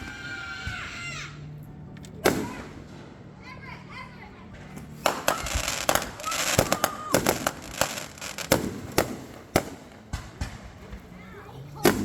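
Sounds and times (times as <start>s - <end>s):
fireworks bangs: 2.2s - 3.2s, 4.6s - 12.0s.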